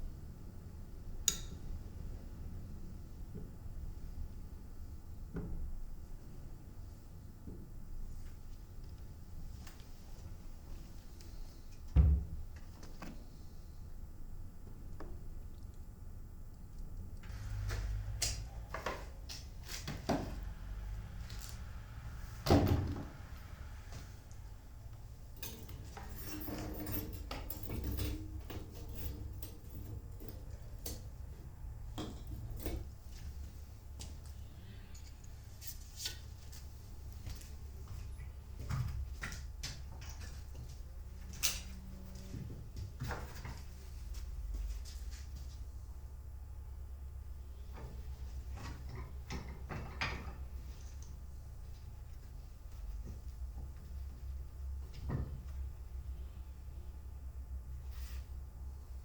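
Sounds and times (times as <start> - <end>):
low rumble: 20.4 - 25.2.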